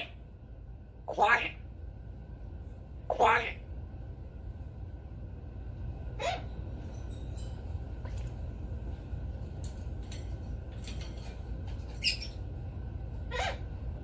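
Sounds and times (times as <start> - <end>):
parrot squeaks and clicks: 11.7 - 12.4.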